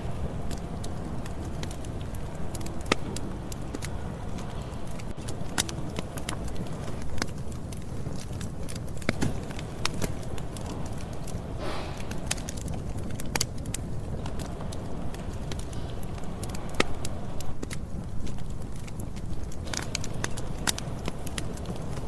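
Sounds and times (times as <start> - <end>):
campfire crackling and popping: 0.0 - 22.0
fire low rumble: 0.0 - 22.0
brief hiss: 11.6 - 12.2.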